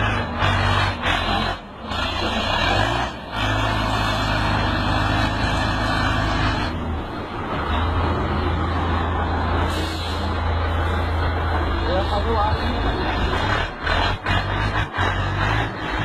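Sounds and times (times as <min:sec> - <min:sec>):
heavy machinery engine running: 0:00.0 - 0:16.0.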